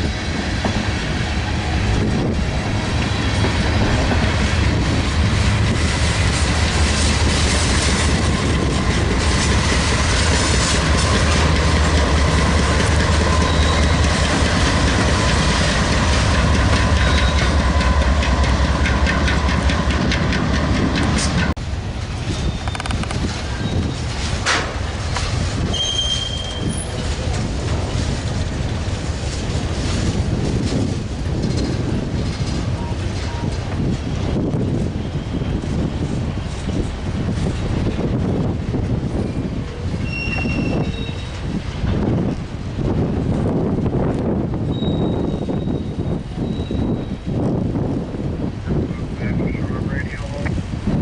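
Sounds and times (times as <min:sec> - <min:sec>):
freight train rumble: 0:00.0 - 0:51.0
wheels clacking over rail joints: 0:00.3 - 0:44.3
high wheel squeal: 0:13.3 - 0:14.1, 0:22.3 - 0:24.2, 0:25.7 - 0:27.0, 0:40.0 - 0:41.5, 0:44.7 - 0:47.2.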